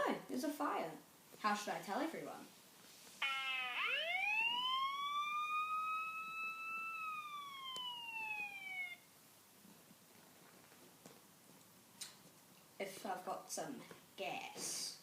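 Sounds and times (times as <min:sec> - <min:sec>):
siren wail: 0:03.2 - 0:09.1.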